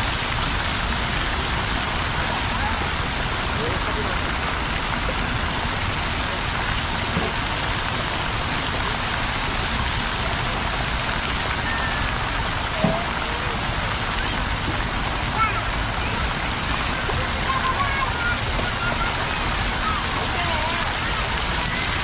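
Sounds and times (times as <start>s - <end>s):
fountain water rushing: 0.0s - 22.0s
faint distant voices: 1.4s - 22.0s.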